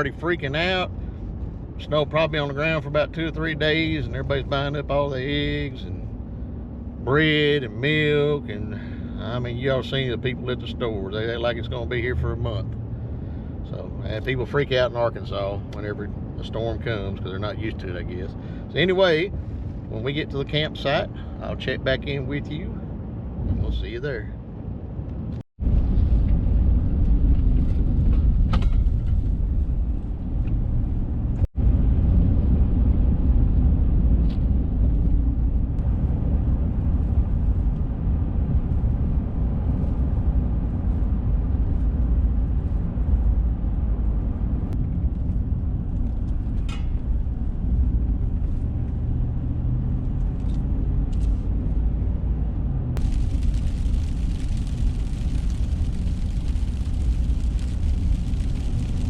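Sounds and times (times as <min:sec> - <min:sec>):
truck engine and road rumble: 0:00.0 - 0:59.0
hiss: 0:53.0 - 0:59.0.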